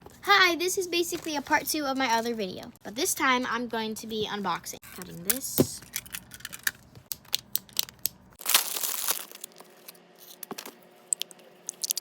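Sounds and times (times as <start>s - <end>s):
packaging crinkling: 5.8s - 12.0s
packaging tearing rip: 7.7s - 9.6s.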